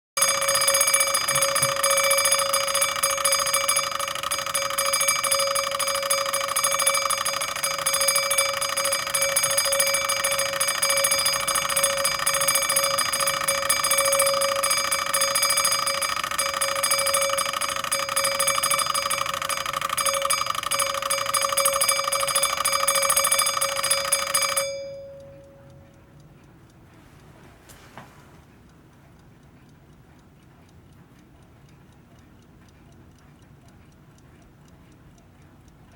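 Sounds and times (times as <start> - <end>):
alarm clock bell ringing: 0.2 - 25.8
clock ticking: 0.2 - 27.3, 28.4 - 35.9.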